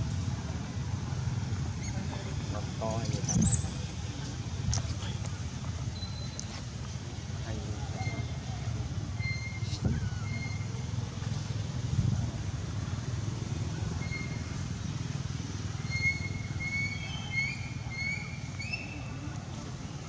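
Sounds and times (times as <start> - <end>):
high chirping calls: 15.8 - 19.4.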